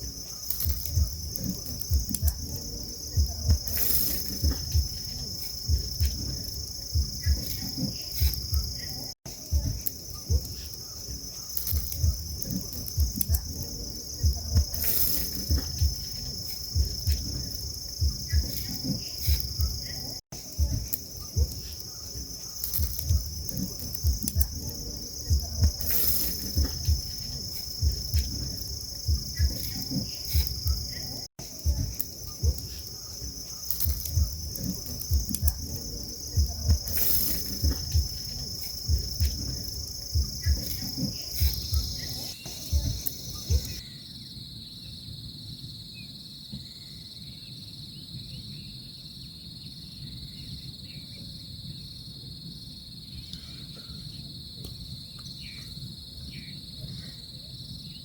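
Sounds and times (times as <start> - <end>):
insect chorus trilling: 0.0 - 58.0
low thumps and knocks: 0.6 - 10.6, 11.7 - 20.0, 22.8 - 32.9, 33.8 - 43.8.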